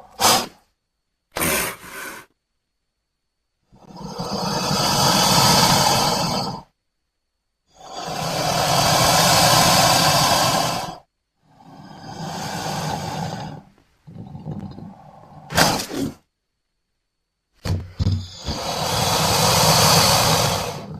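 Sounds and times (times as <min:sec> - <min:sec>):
crocodile hissing growls: 0:00.0 - 0:00.6, 0:01.4 - 0:02.3, 0:03.7 - 0:06.7, 0:07.7 - 0:16.2, 0:18.2 - 0:20.9.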